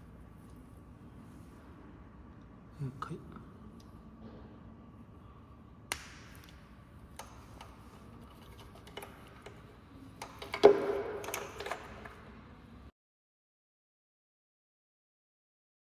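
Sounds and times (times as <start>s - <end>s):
plastic clack with rattling: 7.2s - 12.2s.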